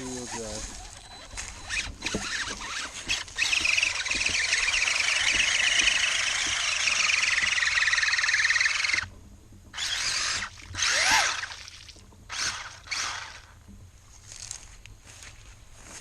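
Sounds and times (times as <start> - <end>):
electric motor and gears whining: 0.0 - 9.1, 9.7 - 13.6.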